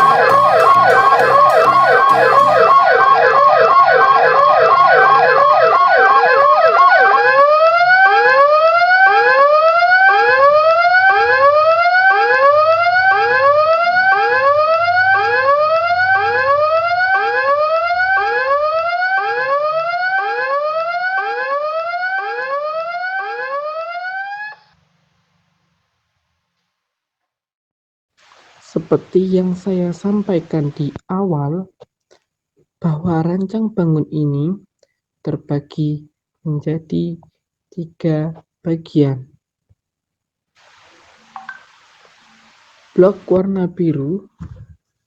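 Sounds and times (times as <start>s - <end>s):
electronic warning siren wailing: 0.0s - 24.8s.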